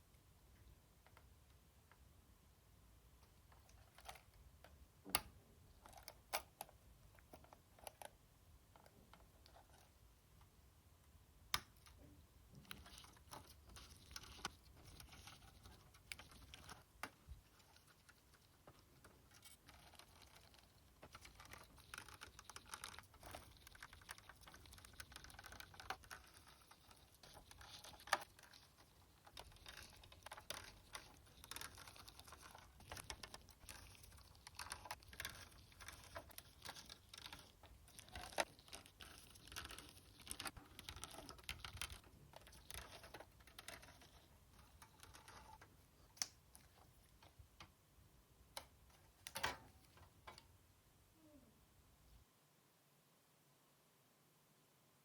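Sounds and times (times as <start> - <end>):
plastic and metal parts clicking: 11.5 - 47.7, 48.5 - 50.5.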